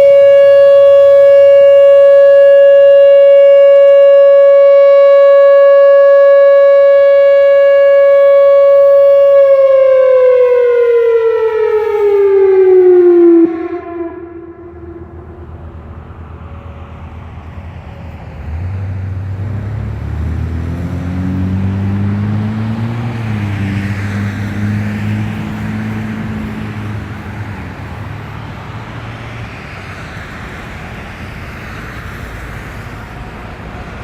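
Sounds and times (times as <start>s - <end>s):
steady road noise: 0.0s - 34.0s
vehicle engine accelerating: 8.3s - 34.0s.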